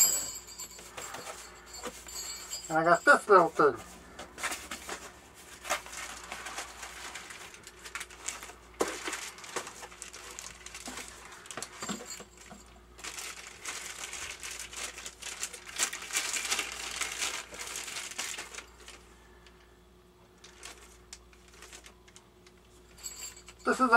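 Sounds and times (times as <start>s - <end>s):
packaging crinkling and rustling: 4.0s - 19.6s, 20.3s - 23.2s.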